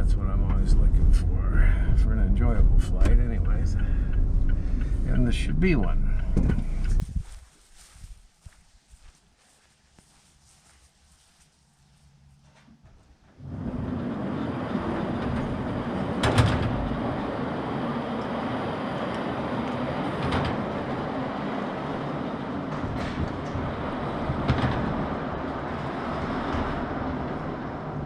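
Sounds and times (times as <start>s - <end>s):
vehicle rumbling on the move: 0.0s - 8.2s, 13.4s - 28.0s
vehicle bumps: 1.9s - 7.4s, 12.4s - 17.5s, 22.6s - 28.0s.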